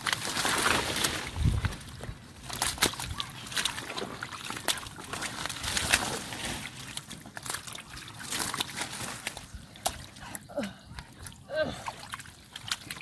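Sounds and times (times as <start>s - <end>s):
shallow water sloshing: 0.0s - 13.0s.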